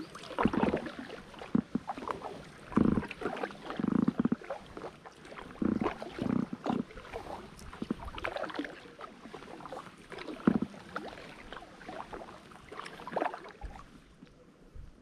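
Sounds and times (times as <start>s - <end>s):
water splashing around kayak: 0.0s - 15.0s.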